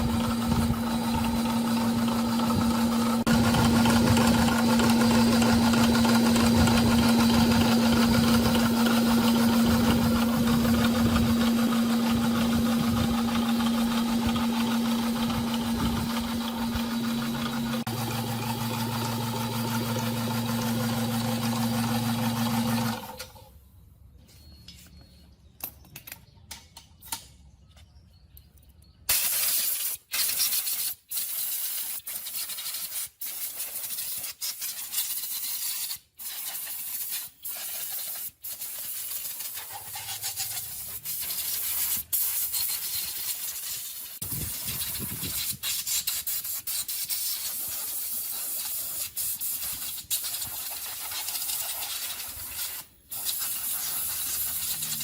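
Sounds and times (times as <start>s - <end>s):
electric motor humming: 0.0s - 23.2s, 53.8s - 55.0s
hissing spray: 29.1s - 55.0s.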